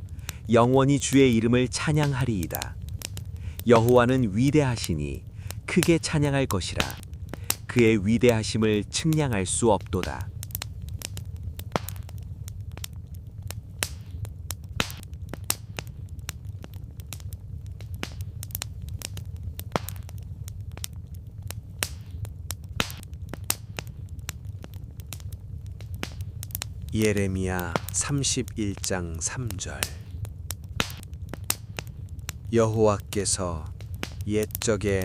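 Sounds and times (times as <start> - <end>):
campfire crackling and popping: 0.0 - 35.0
low rumble of burning fire: 0.0 - 35.0.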